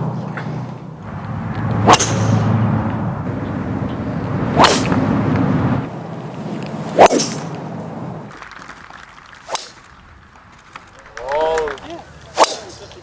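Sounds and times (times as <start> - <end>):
low background noise: 0.0 - 13.0
club swish: 1.8 - 2.4, 4.6 - 5.0, 7.0 - 7.5, 9.5 - 9.8, 12.3 - 12.9
golf club striking ball: 1.8 - 2.5, 7.0 - 7.5.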